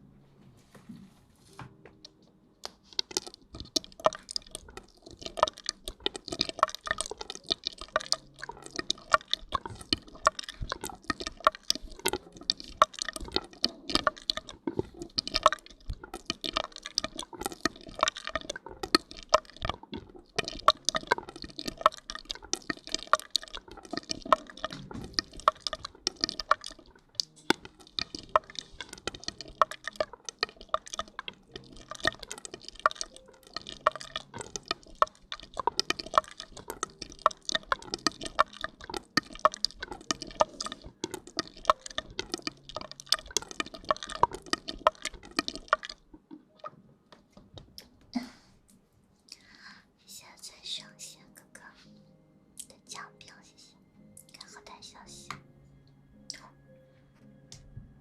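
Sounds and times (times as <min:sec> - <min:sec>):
shampoo lather squishing: 0:02.6 - 0:46.8.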